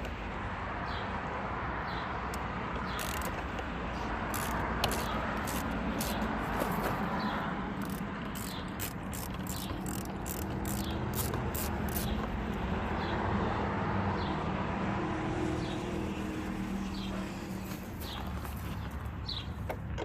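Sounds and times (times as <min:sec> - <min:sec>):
socket ratchet clicking: 0:02.4 - 0:12.7.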